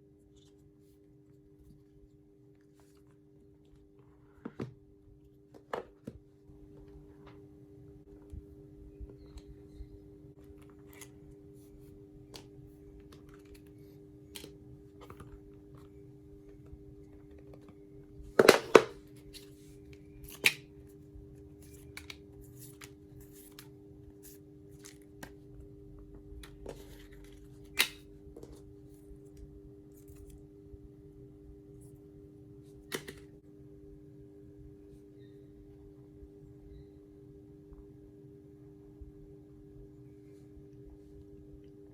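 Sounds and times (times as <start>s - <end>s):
steady low hum: 0.0s - 41.9s.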